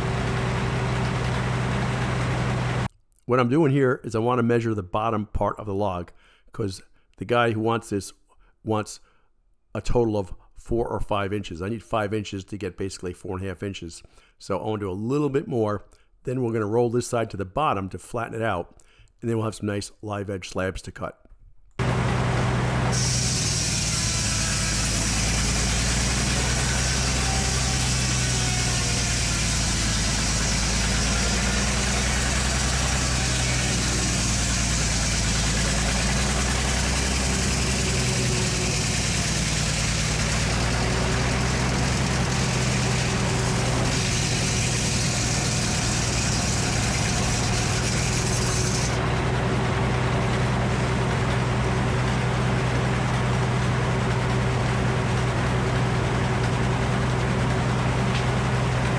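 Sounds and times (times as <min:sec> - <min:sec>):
sawmill engine humming: 0:00.0 - 0:02.9, 0:21.8 - 0:58.9.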